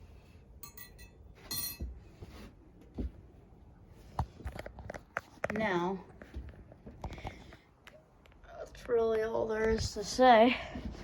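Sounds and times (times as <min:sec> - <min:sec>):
light metallic clinks: 0:00.6 - 0:01.9.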